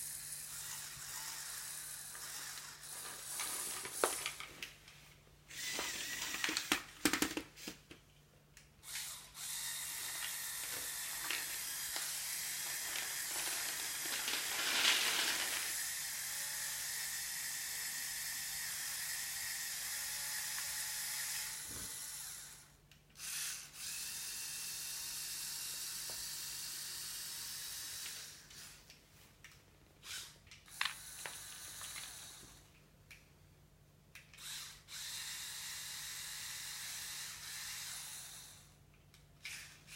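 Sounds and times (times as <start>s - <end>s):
small electric motor and gearing: 0.0s - 4.5s, 5.5s - 6.8s, 8.8s - 28.9s, 30.0s - 32.7s, 34.4s - 38.8s, 39.4s - 39.9s
plastic parts clicking and rattling: 2.1s - 4.8s, 5.7s - 7.5s, 10.1s - 15.8s.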